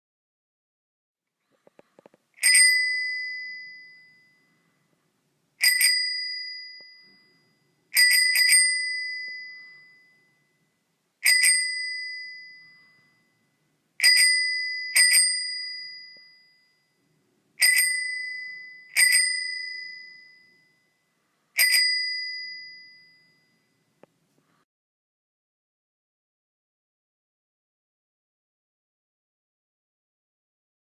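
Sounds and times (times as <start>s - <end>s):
bicycle bell ringing: 2.4s - 4.8s, 5.6s - 21.0s, 21.6s - 23.9s.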